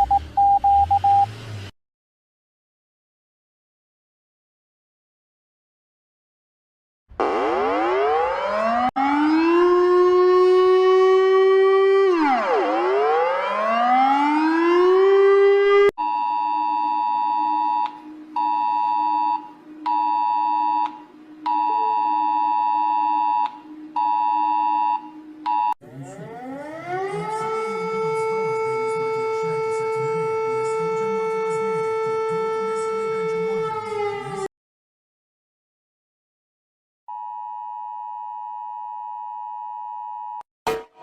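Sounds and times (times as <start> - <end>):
multi-tone alert tone bursts: 0.0 - 1.3, 16.1 - 26.2
siren sliding in pitch: 7.2 - 15.9, 16.8 - 34.5
siren wailing: 7.2 - 34.5.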